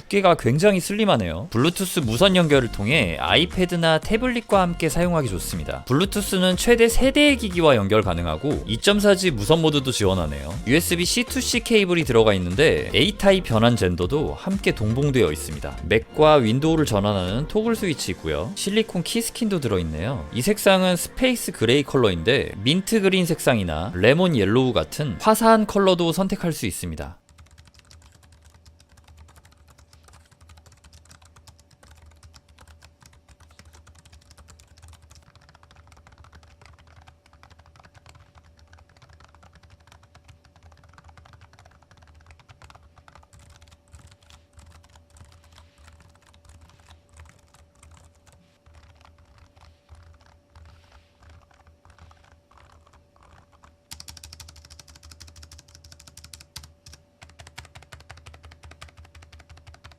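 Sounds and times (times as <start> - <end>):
typing on keyboard: 27.2 - 59.9.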